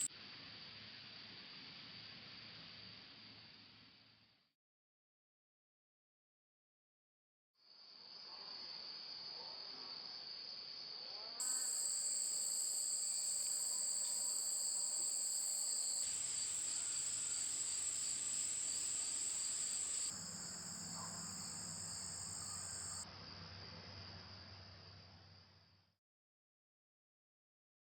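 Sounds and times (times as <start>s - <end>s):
crickets trilling: 11.4s - 23.0s.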